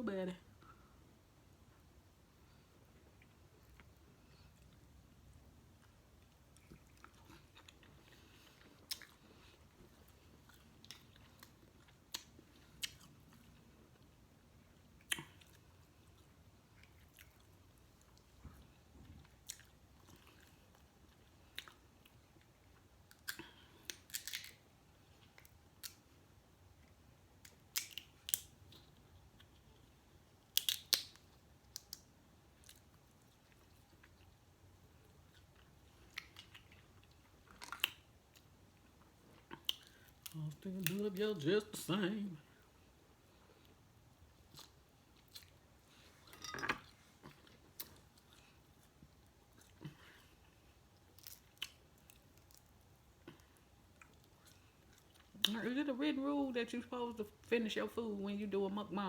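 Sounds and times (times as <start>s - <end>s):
person chewing seafood: 5.8s - 14.1s, 35.2s - 40.4s, 47.0s - 55.4s.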